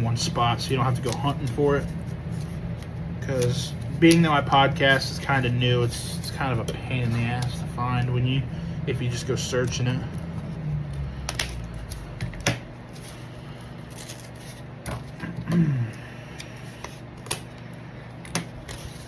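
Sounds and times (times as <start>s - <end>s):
paper and plastic rustling: 0.1s - 8.0s, 11.5s - 15.2s, 18.4s - 19.0s.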